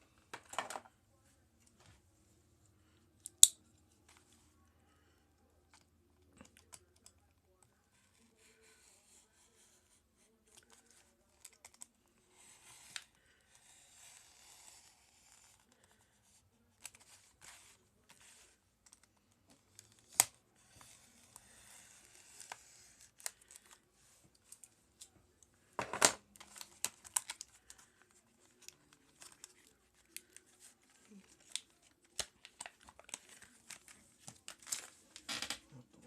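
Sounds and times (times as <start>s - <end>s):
packaging crinkling and tearing: 26.4s - 35.2s.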